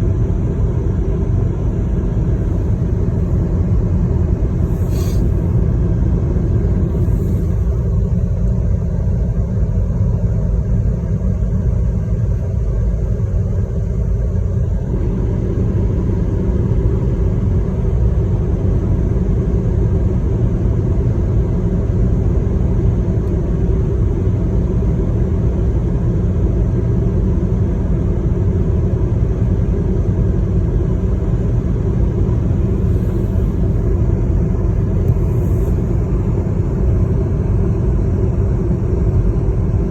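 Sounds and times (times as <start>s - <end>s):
vehicle rumbling: 0.0s - 9.8s, 29.4s - 39.9s.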